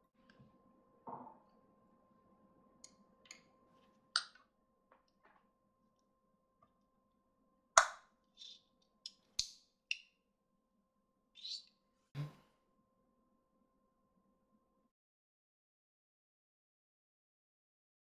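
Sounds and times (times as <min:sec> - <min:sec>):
faint steady hum: 0:00.0 - 0:09.4.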